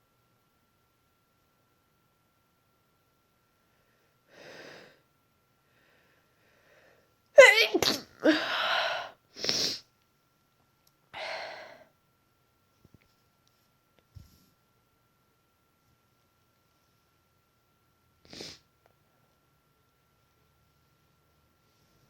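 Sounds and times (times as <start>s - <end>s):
woman sneezing: 7.4s - 9.8s.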